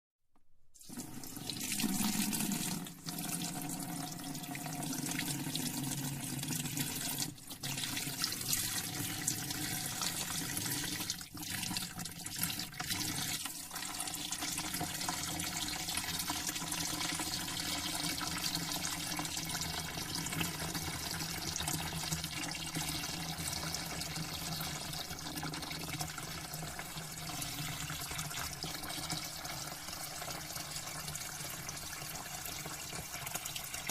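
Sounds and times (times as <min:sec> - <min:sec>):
water running from tap into sink: 0:00.8 - 0:33.9.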